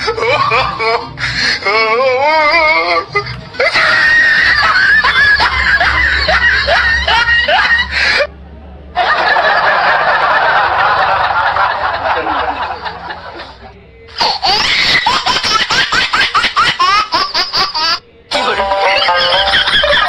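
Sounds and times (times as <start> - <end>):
fast rhythmic cackling laugh: 0.0 - 1.6, 3.2 - 8.3, 9.0 - 18.0, 19.0 - 20.0
canned laughter: 0.0 - 8.3, 9.0 - 18.0, 18.8 - 20.0
music: 18.3 - 20.0.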